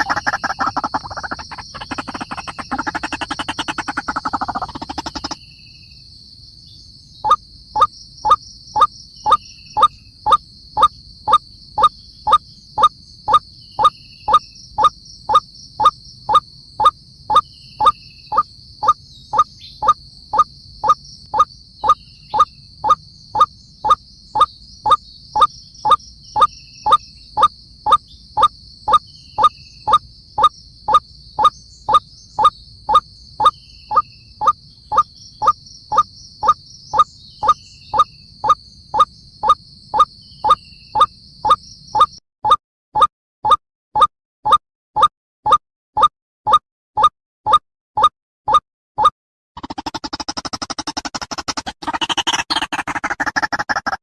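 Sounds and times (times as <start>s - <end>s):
waterhen repeated call: 0.0s - 5.4s, 49.6s - 54.0s
high insect drone: 0.0s - 42.0s, 49.6s - 54.0s.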